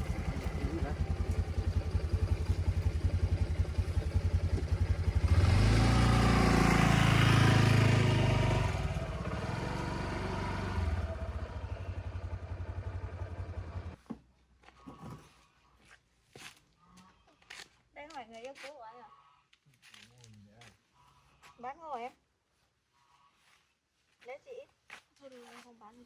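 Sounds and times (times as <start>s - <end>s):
small engine running: 0.0s - 14.0s.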